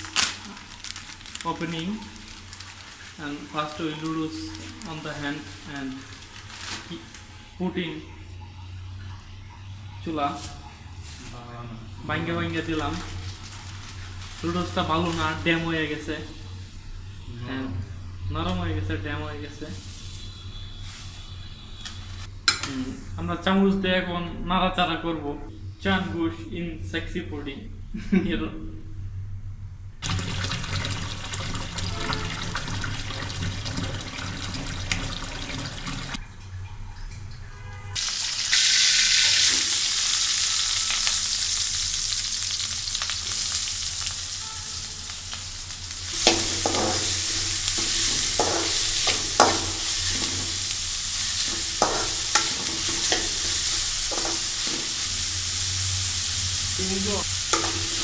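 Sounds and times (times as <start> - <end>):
noodles sizzling in a pan: 0.0 - 18.2, 30.0 - 36.2, 38.0 - 58.0
spoon scraping a pan: 46.1 - 55.5, 57.5 - 58.0.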